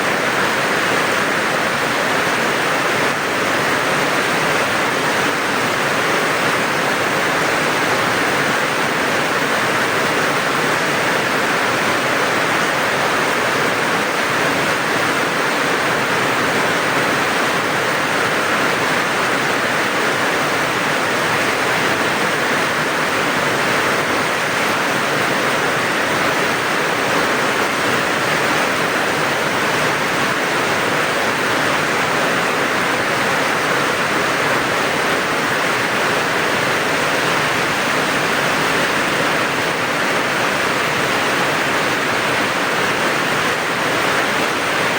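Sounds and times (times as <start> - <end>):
heavy rain: 0.0 - 44.9.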